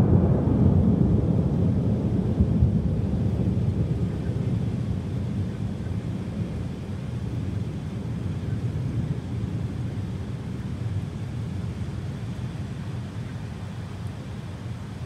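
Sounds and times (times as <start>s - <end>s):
rolling thunder: 0.0s - 10.0s.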